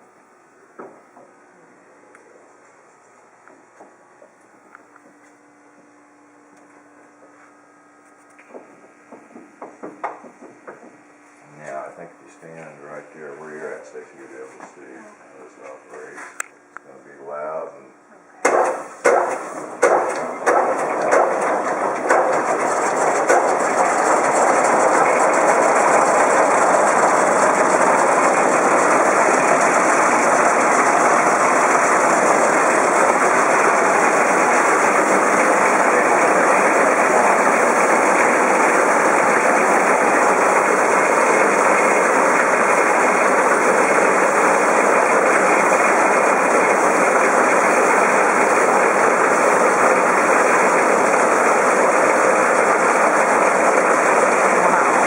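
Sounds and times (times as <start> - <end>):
belt sander sanding wood: 19.1 - 55.0.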